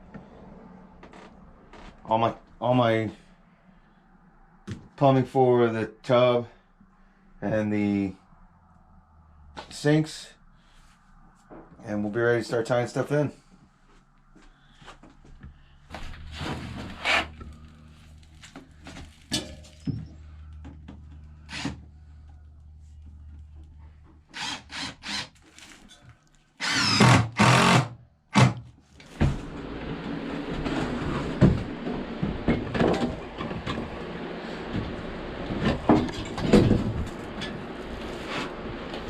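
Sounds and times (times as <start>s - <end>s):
power tool bursts: 24.3s - 25.3s, 26.6s - 28.6s.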